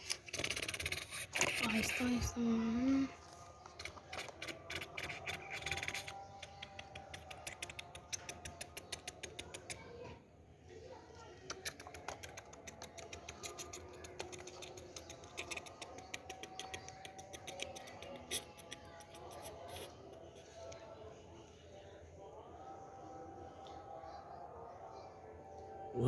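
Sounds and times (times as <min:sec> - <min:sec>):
small sharp clicks: 0:03.8 - 0:09.8.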